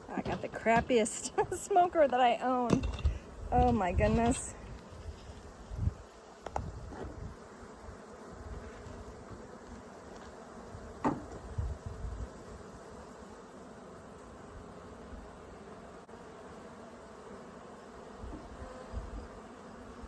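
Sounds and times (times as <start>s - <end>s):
low bumps from hive: 0.0s - 7.5s, 8.3s - 12.4s
honeybees buzzing: 0.0s - 20.0s.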